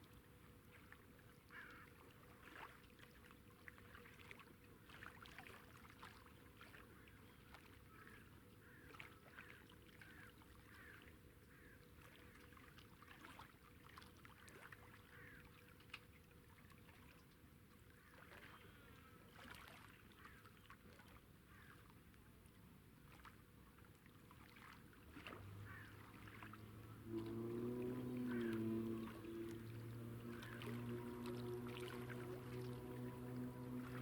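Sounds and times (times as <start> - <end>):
low night ambience rumble: 25.3 - 34.0.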